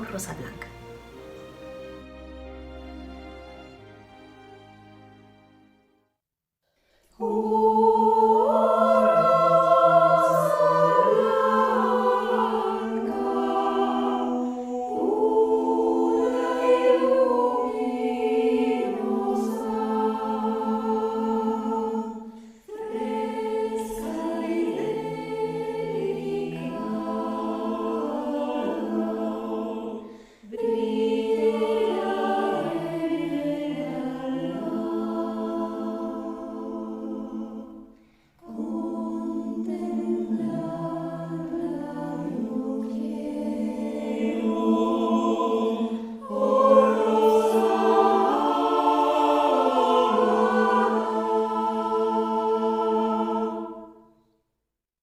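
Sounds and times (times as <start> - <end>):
choir singing: 0.0 - 5.4, 6.9 - 54.3.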